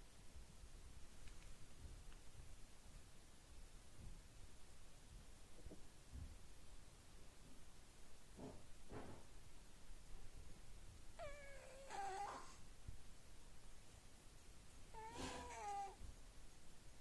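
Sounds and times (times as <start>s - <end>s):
cat snoring with squeaky tone: 11.2s - 12.6s, 15.0s - 16.0s.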